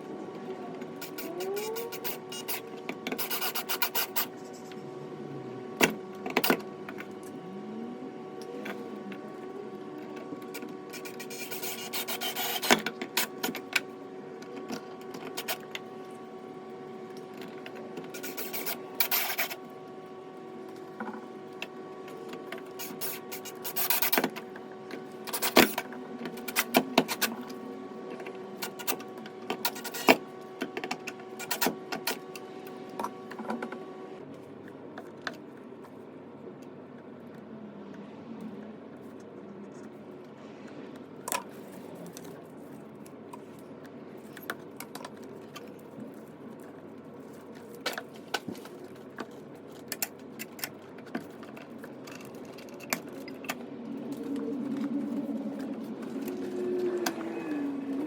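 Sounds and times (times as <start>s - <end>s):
steady hum: 0.0s - 58.0s
tools and hardware handled: 44.2s - 57.3s.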